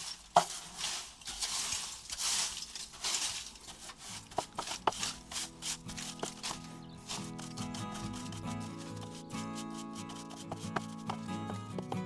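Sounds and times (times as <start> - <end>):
broom sweeping stone floor: 0.0 - 11.9
background music: 4.6 - 12.0.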